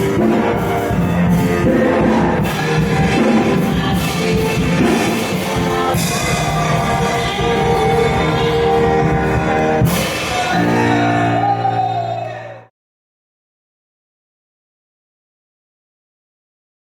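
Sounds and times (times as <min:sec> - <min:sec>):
band music: 0:00.0 - 0:12.7.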